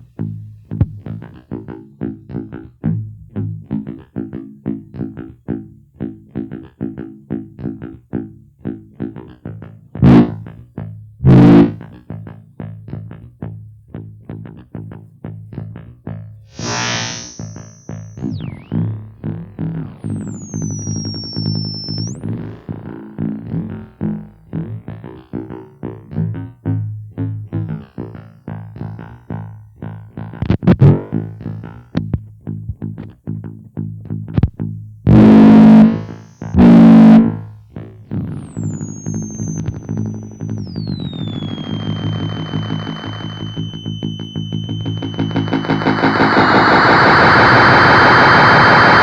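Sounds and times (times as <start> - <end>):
flanged delayed instrument notes: 16.6 - 18.9, 38.1 - 46.7
high whistling squeal: 16.6 - 18.9, 20.0 - 22.3, 38.2 - 49.0
high gliding tone: 16.6 - 19.0, 19.8 - 22.4, 35.1 - 36.8, 38.1 - 49.0.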